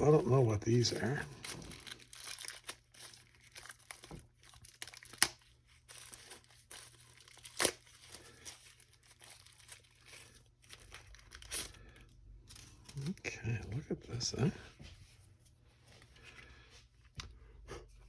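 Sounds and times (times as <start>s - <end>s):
packaging crinkling: 0.0s - 13.5s.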